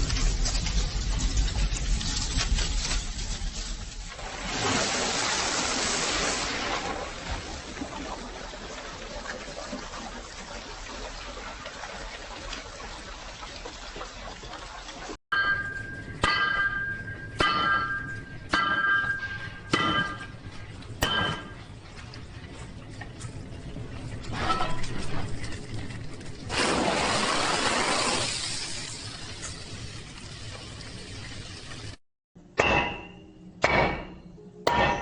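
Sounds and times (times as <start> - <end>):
hot steel hissing in water: 26.5 - 30.0.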